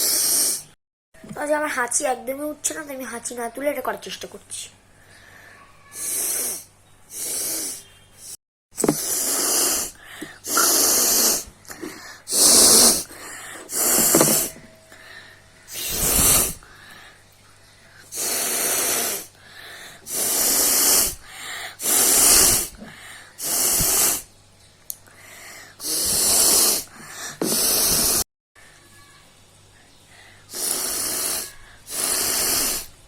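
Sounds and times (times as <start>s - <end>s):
person blowing nose: 0.0s - 0.7s, 5.9s - 14.7s, 15.7s - 16.6s, 18.1s - 19.3s, 20.1s - 21.2s, 21.8s - 22.7s, 23.4s - 24.3s, 25.8s - 28.2s, 30.5s - 32.9s.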